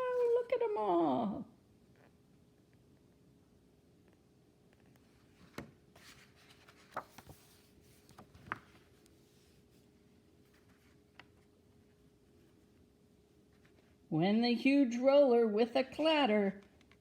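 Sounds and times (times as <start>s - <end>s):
paper rustling: 5.0s - 12.8s.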